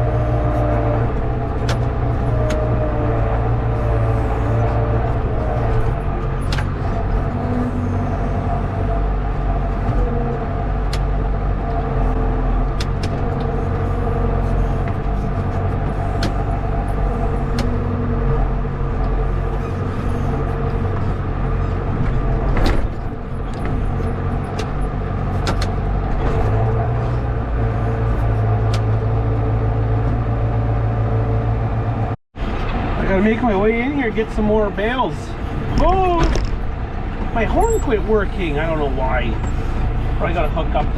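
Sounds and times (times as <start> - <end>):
tractor engine under load: 0.0 - 40.9
sharp clicks and knocks: 1.2 - 2.8, 5.1 - 7.4, 12.7 - 13.8, 14.8 - 19.2, 20.0 - 27.2, 28.0 - 29.0, 35.6 - 37.4.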